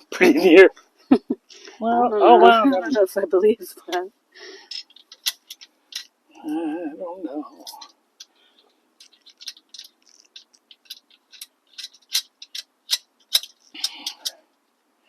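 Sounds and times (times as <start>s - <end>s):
metal clicks and ticks: 4.7s - 6.1s, 7.6s - 14.6s.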